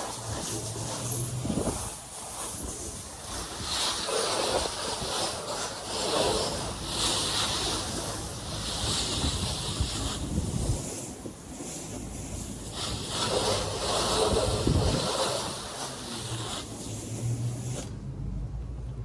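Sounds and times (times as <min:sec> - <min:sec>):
pressure washer spraying: 0:00.0 - 0:18.0.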